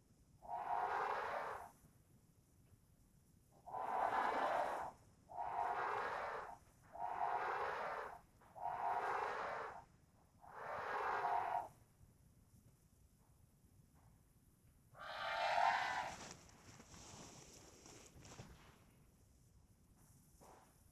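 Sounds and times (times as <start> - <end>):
elephant trumpeting: 0.5 - 1.7, 3.7 - 9.8, 10.5 - 11.7, 15.0 - 16.2.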